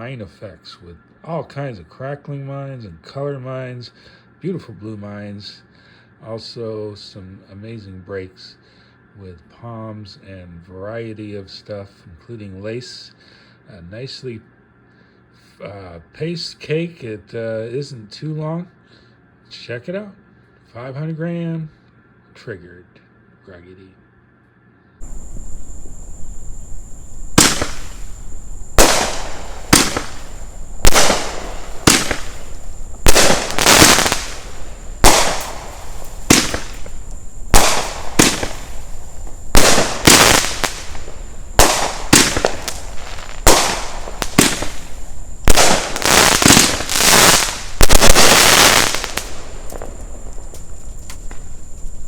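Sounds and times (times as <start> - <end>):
fireworks shots and aerial breaks: 25.0 - 52.0.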